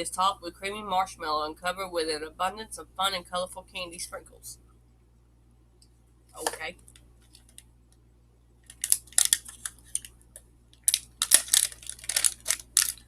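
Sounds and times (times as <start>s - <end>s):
plastic wrapper crinkling: 8.6s - 13.0s.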